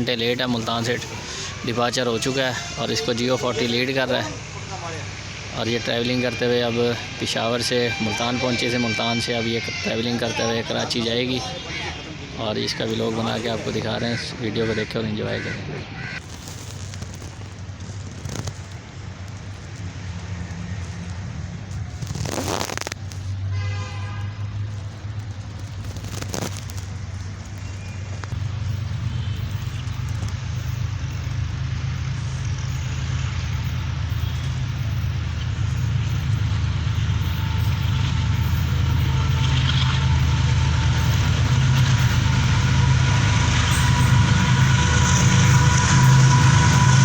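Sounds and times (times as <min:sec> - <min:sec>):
faint whining tones: 0:00.0 - 0:15.1, 0:26.4 - 0:47.0
locomotive engine drone: 0:00.0 - 0:47.0.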